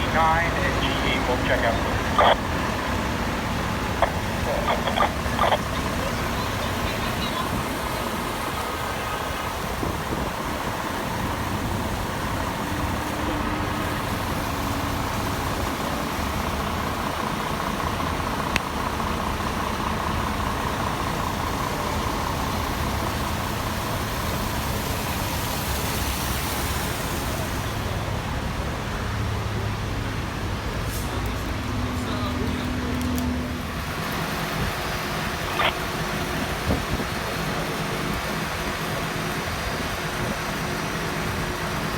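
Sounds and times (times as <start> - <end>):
faint steady whine: 0.0 - 9.6
city street traffic: 0.0 - 41.9.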